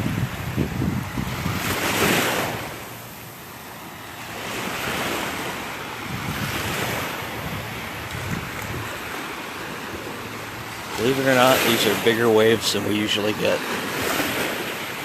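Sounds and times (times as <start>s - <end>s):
wind buffeting microphone: 0.0s - 2.8s, 4.8s - 12.4s
surf waves breaking: 0.0s - 15.0s.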